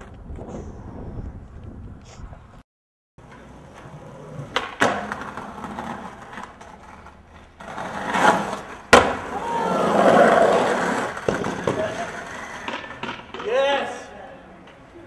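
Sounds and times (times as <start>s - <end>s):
skateboard wheels rolling on pavement: 0.0s - 2.6s, 3.2s - 15.0s
skateboard clacks: 3.2s - 13.8s.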